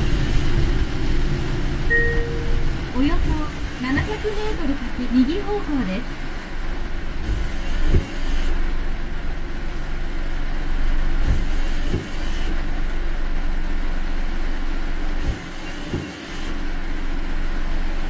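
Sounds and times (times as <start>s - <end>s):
car road noise: 0.0s - 15.4s
heavy rain on car: 2.7s - 15.6s.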